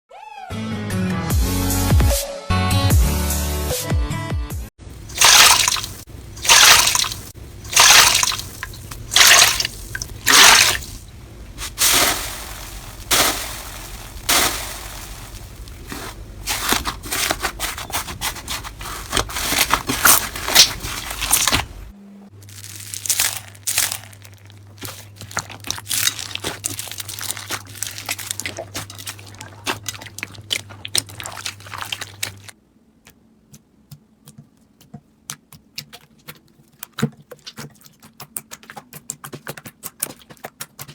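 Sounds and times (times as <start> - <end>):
crunchy slime crackling: 4.9 - 32.6
slime squelching: 4.9 - 40.9.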